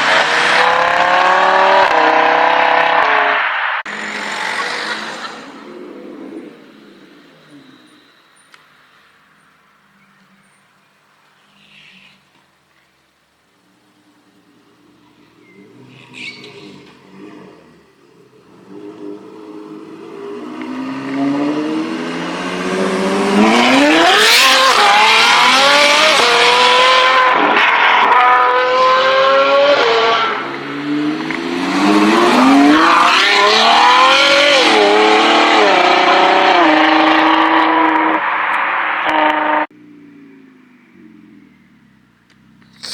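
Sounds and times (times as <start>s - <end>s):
sports car accelerating through gears: 0.0s - 8.8s, 14.3s - 42.9s.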